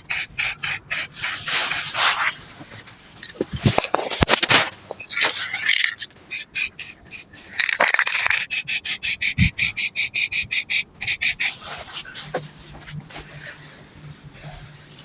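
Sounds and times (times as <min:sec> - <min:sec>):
hand sanding strokes: 0:00.0 - 0:02.4, 0:08.4 - 0:13.5.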